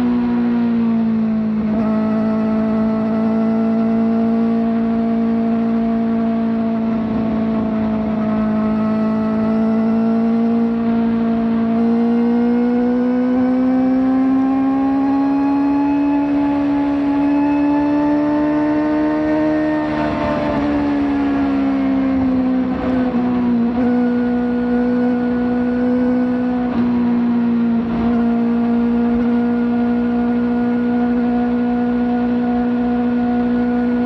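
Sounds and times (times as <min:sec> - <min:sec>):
motorcycle engine at high rpm: 0:00.0 - 0:34.0.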